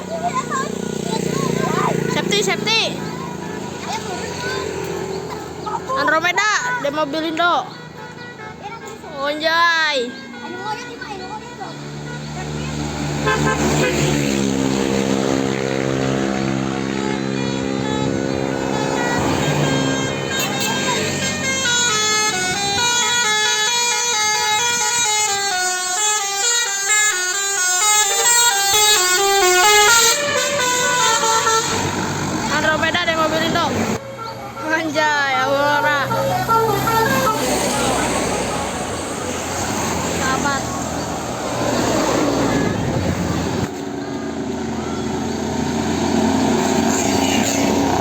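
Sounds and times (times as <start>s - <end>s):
bus engine humming: 0.0s - 48.0s
road traffic noise: 0.0s - 48.0s
multi-tone air horn tune: 16.0s - 45.2s.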